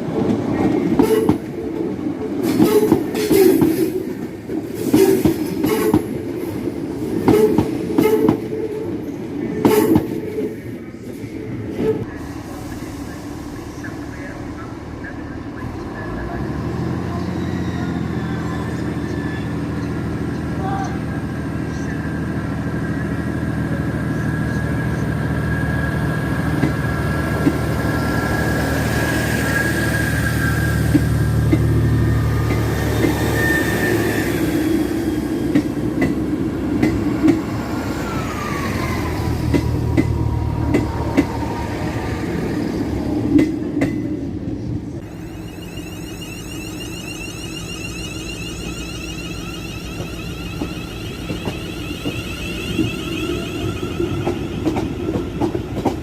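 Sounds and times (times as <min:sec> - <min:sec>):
train traction hum: 0:00.0 - 0:56.0
high wheel squeal: 0:16.8 - 0:20.4, 0:24.4 - 0:36.0, 0:45.0 - 0:56.0.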